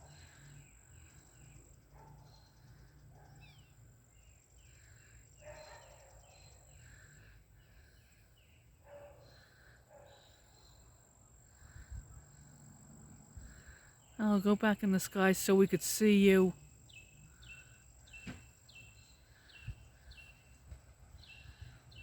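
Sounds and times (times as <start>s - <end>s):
faint bird chirps: 0.0s - 12.6s.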